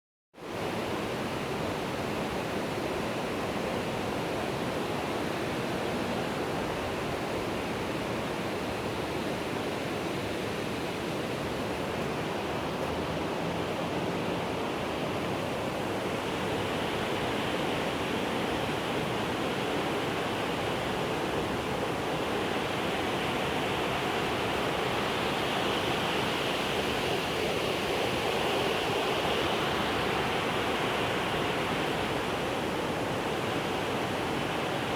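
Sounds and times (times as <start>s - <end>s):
flowing water rushing: 10.6s - 34.9s.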